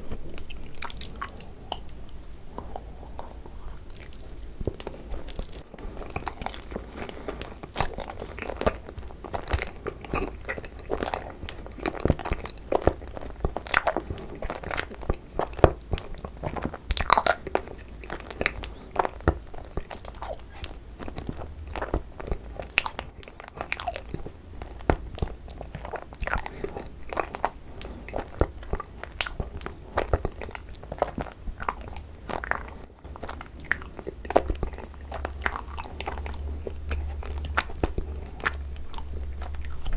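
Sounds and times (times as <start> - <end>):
chewing and biting rice cake: 0.0 - 39.9
mouth clicks and smacks: 28.1 - 39.9.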